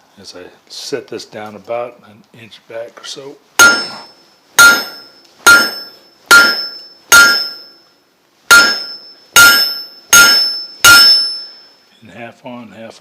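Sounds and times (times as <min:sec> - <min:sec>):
hammer ringing on anvil: 0:03.6 - 0:07.9, 0:08.5 - 0:11.9.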